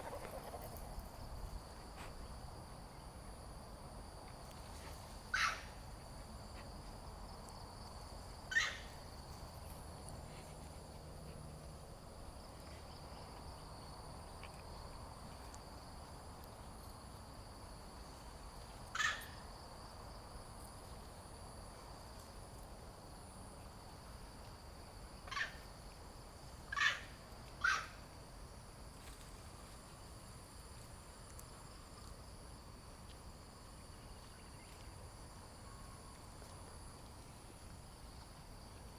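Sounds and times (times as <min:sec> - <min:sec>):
short sharp animal calls: 0:05.3 - 0:05.7, 0:08.5 - 0:08.9, 0:18.9 - 0:19.4, 0:26.7 - 0:28.0.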